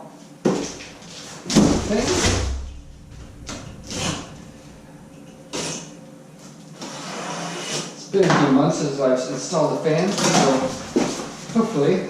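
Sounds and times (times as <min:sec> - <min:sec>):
low rumble: 0:01.5 - 0:06.3.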